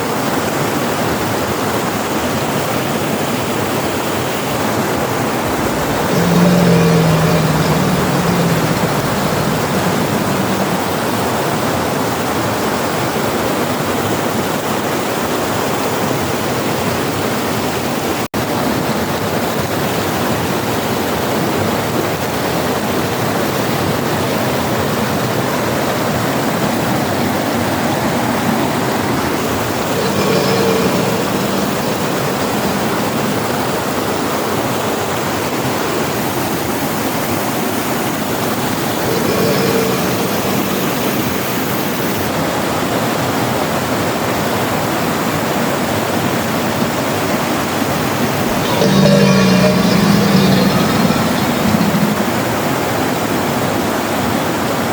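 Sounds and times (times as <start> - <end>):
faint pitched sound: 5.4 - 11.2, 29.9 - 33.8, 38.9 - 42.2, 48.4 - 52.6.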